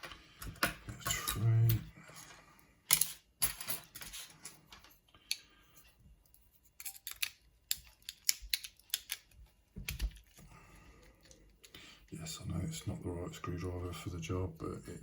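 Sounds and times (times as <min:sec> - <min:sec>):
padlock and tools clattering: 0:06.7 - 0:10.4.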